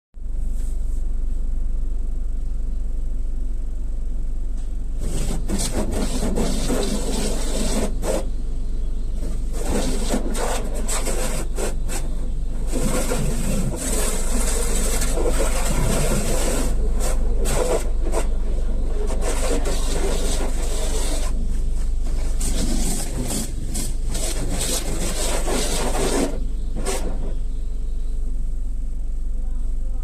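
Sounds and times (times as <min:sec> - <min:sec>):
low machine hum: 0:00.2 - 0:30.0
car wash brushes scrubbing a car: 0:04.9 - 0:27.6.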